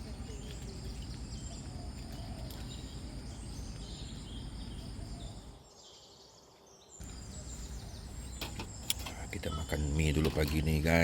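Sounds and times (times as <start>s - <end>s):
birds chirping: 0.0s - 11.0s.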